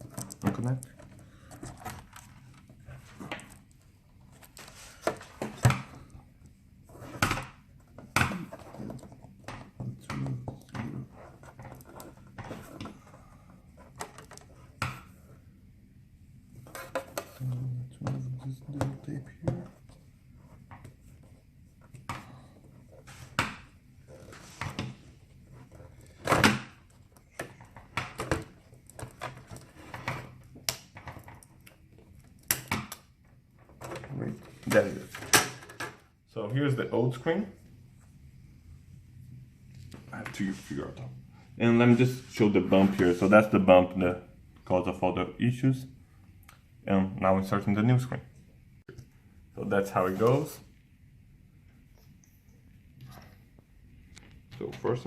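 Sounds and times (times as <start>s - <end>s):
clicks of hands handling plastic parts: 0.0s - 2.7s
rustling scrape: 4.3s - 5.4s.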